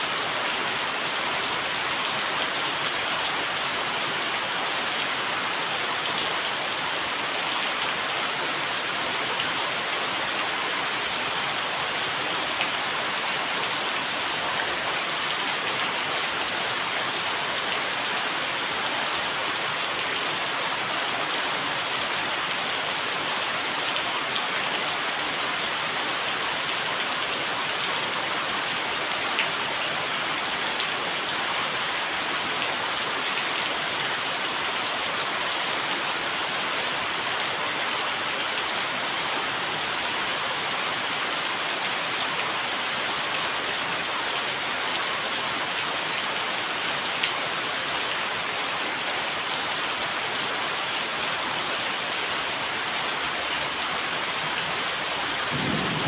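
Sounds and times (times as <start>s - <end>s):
steady rain hiss: 0.0s - 56.0s.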